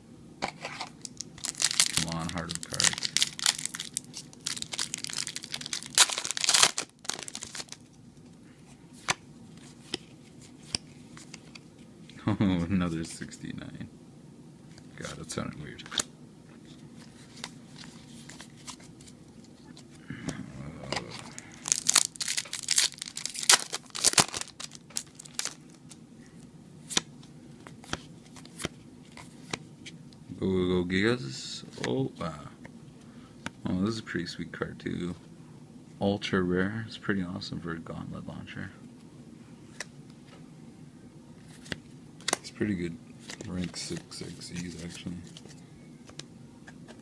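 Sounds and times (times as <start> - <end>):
foil wrapper crinkling and tearing: 1.1 - 7.9, 21.2 - 26.0.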